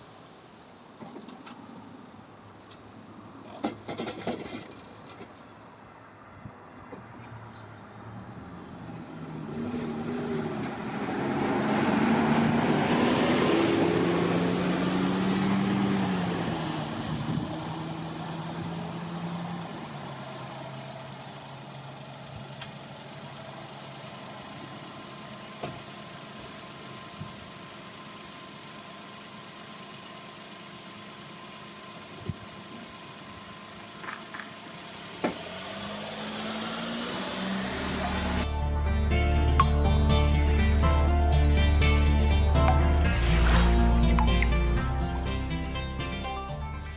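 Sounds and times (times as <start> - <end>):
vehicle engine idling: 0.0 - 3.6, 16.2 - 35.2, 37.9 - 46.9
faint engine whine: 0.0 - 35.8, 37.3 - 46.6.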